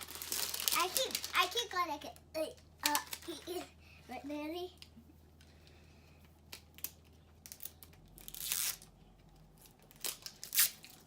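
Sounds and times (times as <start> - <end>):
packaging tearing and crinkling: 0.0 - 1.6, 6.8 - 8.9, 9.9 - 11.0.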